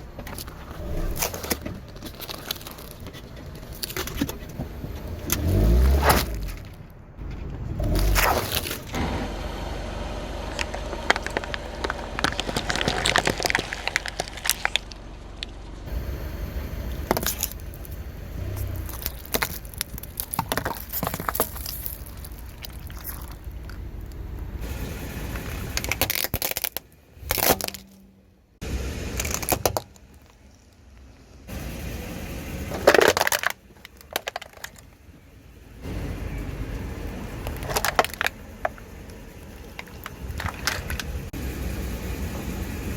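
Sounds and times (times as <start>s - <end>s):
car tyre crushing objects: 0.0s - 42.2s
low car engine: 0.0s - 42.9s.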